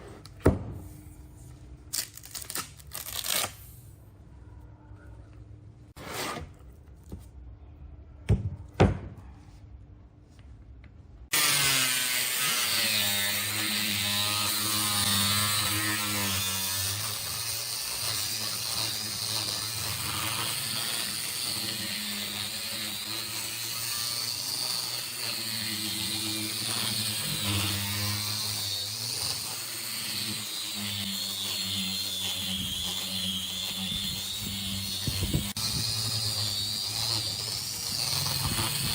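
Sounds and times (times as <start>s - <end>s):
power tool motor whining: 11.3s - 38.9s.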